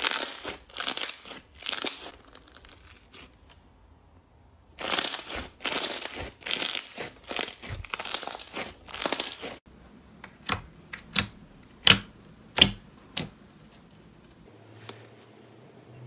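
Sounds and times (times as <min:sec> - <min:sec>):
slime crunching: 0:00.0 - 0:03.5, 0:04.8 - 0:09.6.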